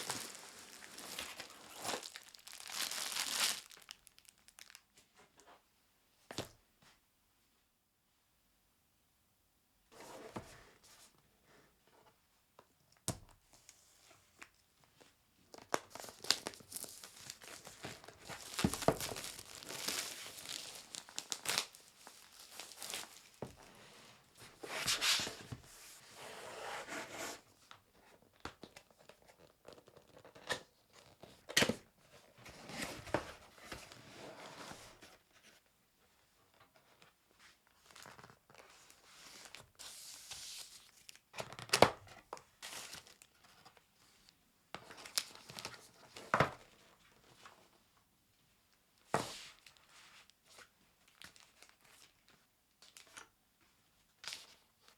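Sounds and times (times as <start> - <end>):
packaging wrap tearing and crinkling: 0.0 - 4.8, 16.0 - 23.3.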